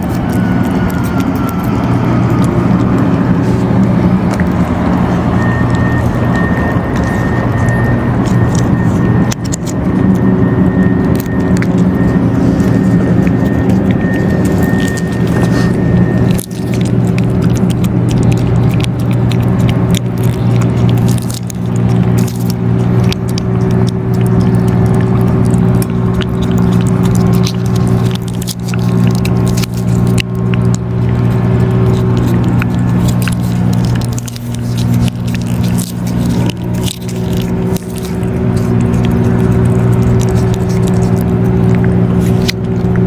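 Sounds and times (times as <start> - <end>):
cats crunching dry food: 0.0 - 43.0
low hum of held tones: 0.0 - 43.0.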